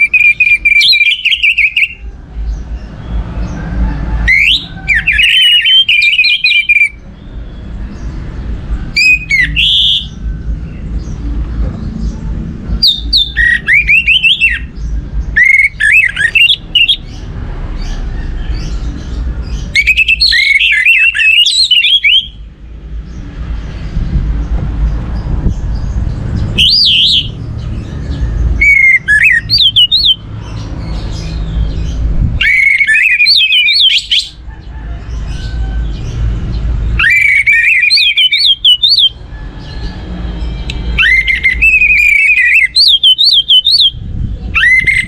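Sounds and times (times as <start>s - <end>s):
steady low rumble: 10.0s - 15.4s, 22.4s - 29.1s, 43.9s - 45.0s.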